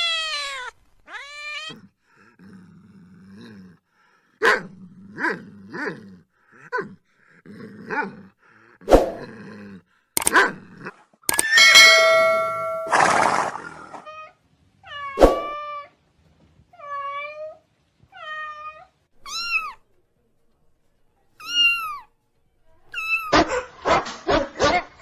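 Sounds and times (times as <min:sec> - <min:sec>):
cat meowing: 0:00.0 - 0:01.8, 0:16.8 - 0:19.8.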